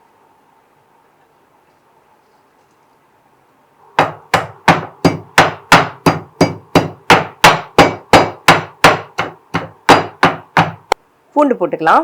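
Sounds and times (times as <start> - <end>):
mortar and pestle pounding: 4.0 - 11.0.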